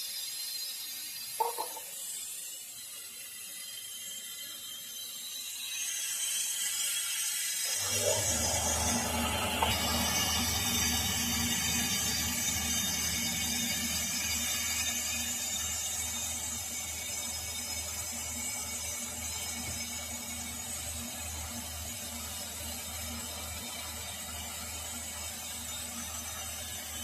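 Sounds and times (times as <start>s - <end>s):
power tool running: 0.0s - 27.0s.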